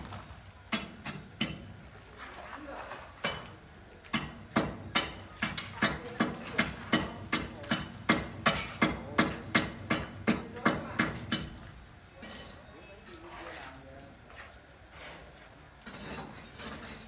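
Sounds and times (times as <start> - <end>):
hammer striking: 4.1 - 11.6.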